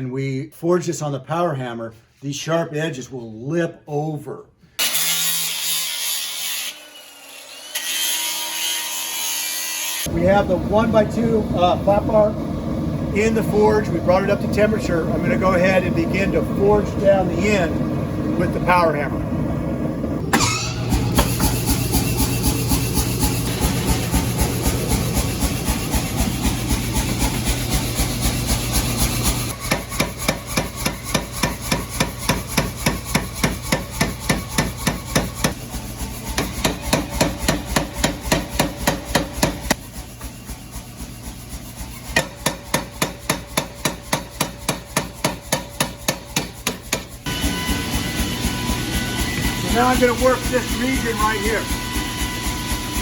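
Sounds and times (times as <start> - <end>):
machine humming: 10.1 - 33.4, 47.0 - 53.0
power hammer blows on steel: 20.3 - 53.0.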